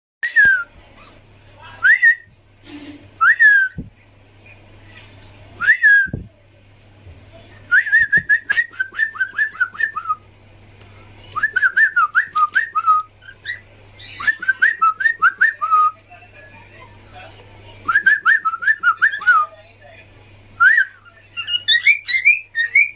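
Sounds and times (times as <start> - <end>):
parrot whistling: 20.6 - 22.9.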